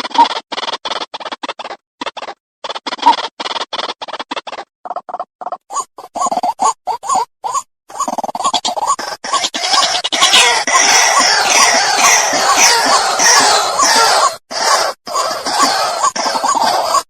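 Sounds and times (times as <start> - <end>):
waterhen harsh croaking call: 8.8 - 17.0.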